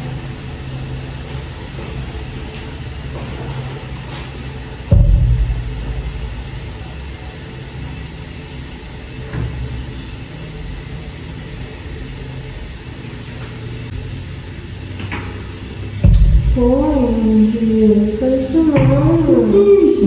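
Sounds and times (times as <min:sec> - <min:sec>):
sharp thump: 0:04.9 - 0:06.5, 0:16.0 - 0:17.4
small motor running with hiss: 0:06.0 - 0:16.0.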